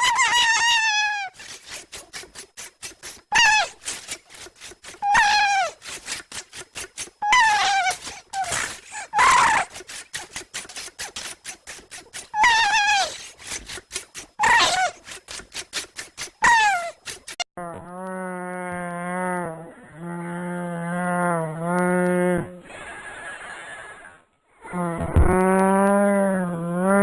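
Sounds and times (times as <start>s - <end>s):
person making high squeals: 0.0s - 6.4s, 7.1s - 19.2s, 24.6s - 27.0s.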